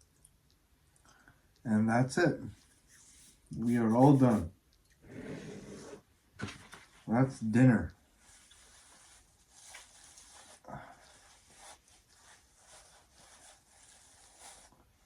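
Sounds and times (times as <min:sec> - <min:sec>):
soft rustling: 0:02.5 - 0:07.2, 0:07.9 - 0:15.0.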